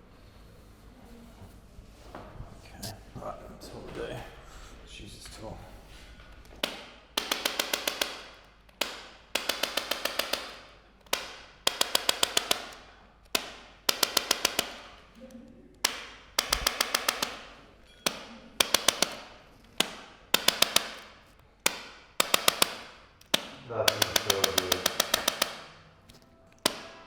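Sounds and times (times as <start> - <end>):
rapid sharp taps: 6.4 - 15.2, 15.8 - 27.0.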